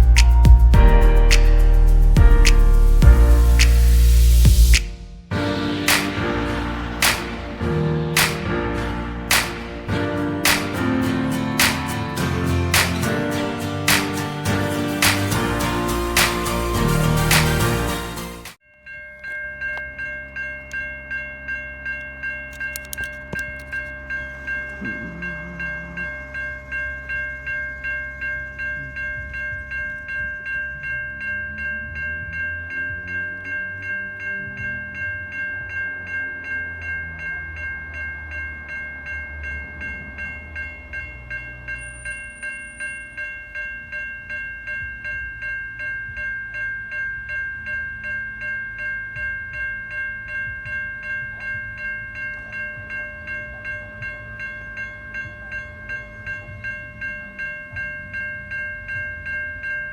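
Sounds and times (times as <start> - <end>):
train rumbling past: 5.3 - 17.4
level-crossing bells ringing: 5.3 - 59.9.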